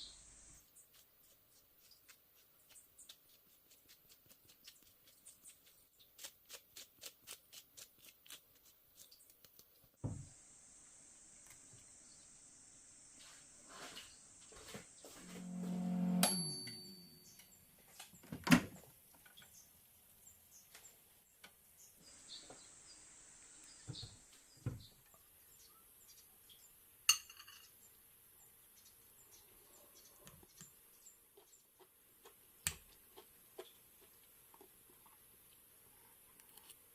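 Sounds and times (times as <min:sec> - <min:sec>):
appliance hum: 0:15.0 - 0:17.2
dishes and utensils clinking: 0:27.1 - 0:27.7.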